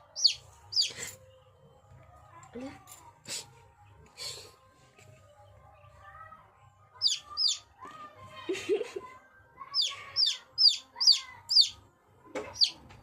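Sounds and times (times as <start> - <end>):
chicks peeping: 0.1 - 1.0, 7.0 - 7.7, 9.8 - 11.8, 12.4 - 12.9.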